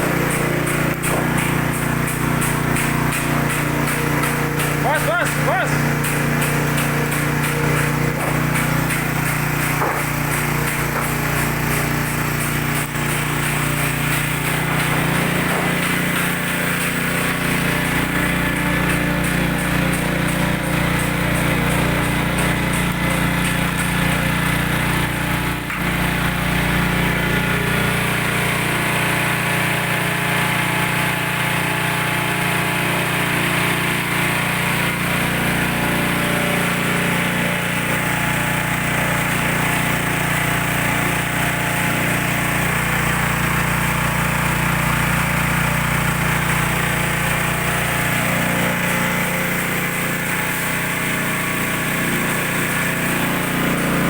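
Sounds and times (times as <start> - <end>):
pressing machine humming: 0.0 - 54.0
knock: 9.6 - 11.5.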